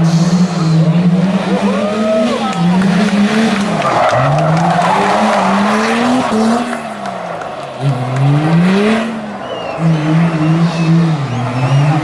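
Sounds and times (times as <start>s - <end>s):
car engine revving: 0.0s - 12.0s.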